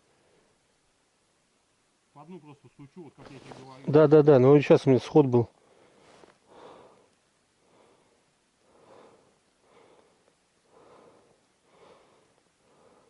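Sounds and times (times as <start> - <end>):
soft breathing: 5.5 - 13.0.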